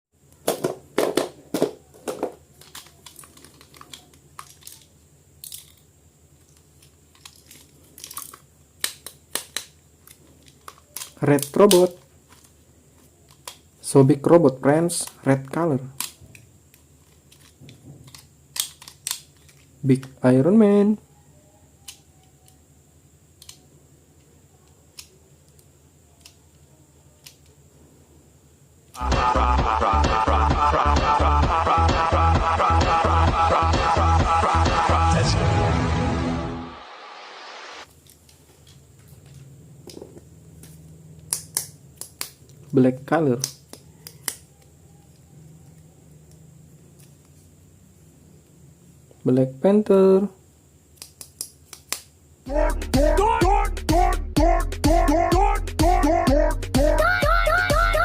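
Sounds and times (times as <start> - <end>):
low room hum: 0.2 - 36.8, 37.8 - 58.0
plastic figures clicking: 2.6 - 5.9, 15.9 - 19.7.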